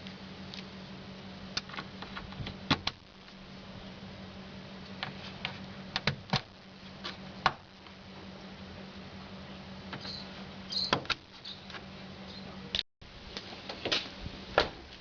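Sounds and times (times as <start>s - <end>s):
steady low hum: 0.0s - 15.0s
brief squeaks: 10.0s - 11.7s.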